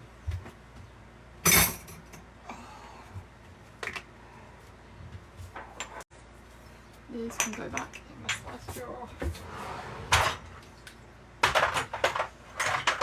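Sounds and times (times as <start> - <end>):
items knocking and clinking on counter: 11.4 - 13.0.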